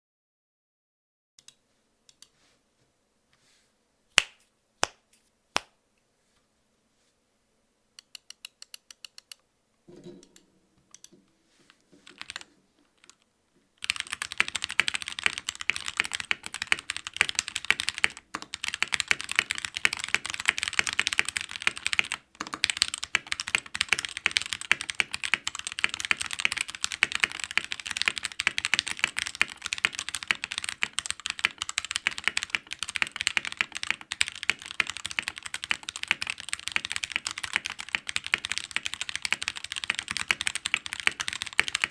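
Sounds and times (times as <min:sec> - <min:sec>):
mechanical keyboard typing: 0:12.1 - 0:13.2, 0:13.8 - 0:41.9.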